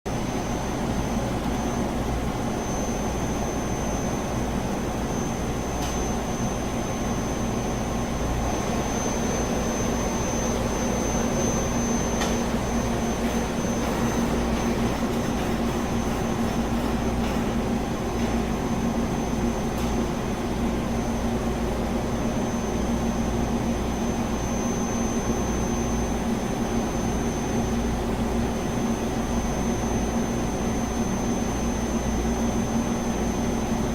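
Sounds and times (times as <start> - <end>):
machine hum: 0.1 - 33.9
high constant whine: 0.2 - 33.9.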